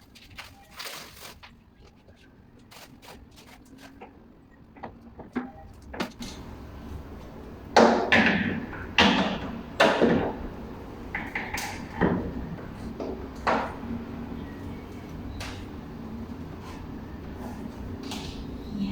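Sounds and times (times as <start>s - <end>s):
handling knocks and clatter: 4.8s - 15.8s.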